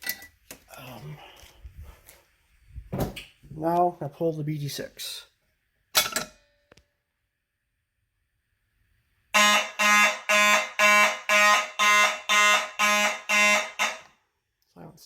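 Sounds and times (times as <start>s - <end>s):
fire alarm horn pulsing: 9.3s - 14.2s.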